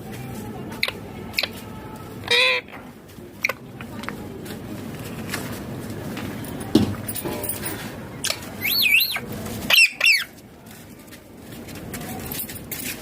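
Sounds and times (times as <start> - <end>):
parakeet calling: 2.3 - 2.7, 8.6 - 10.3.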